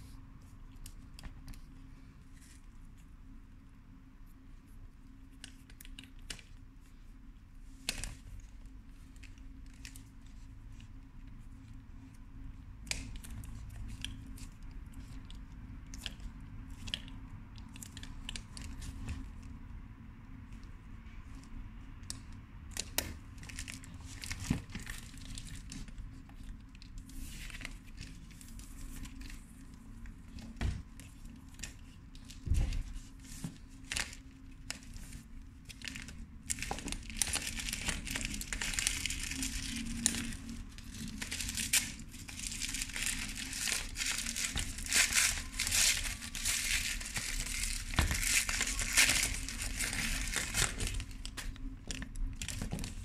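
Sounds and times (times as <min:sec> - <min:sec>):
packaging crinkling and rustling: 0:22.1 - 0:53.0.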